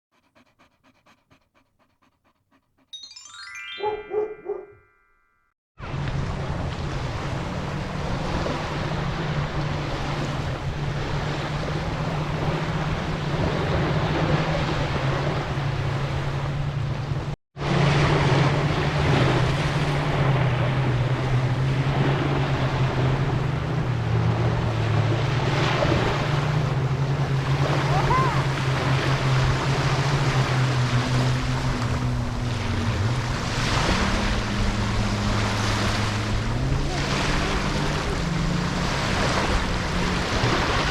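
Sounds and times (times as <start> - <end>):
sea waves washing: 17.6 - 40.9.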